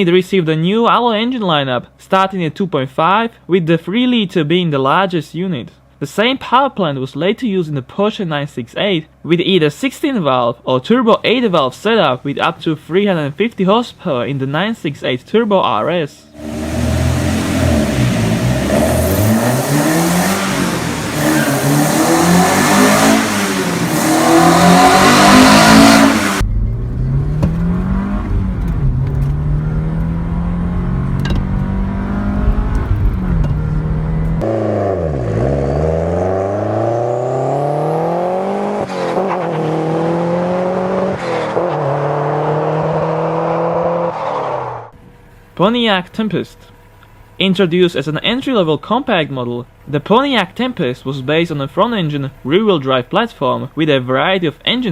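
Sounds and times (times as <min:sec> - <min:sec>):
car engine revving and accelerating: 0:16.3 - 0:44.9
heavy low rumble: 0:23.6 - 0:34.5.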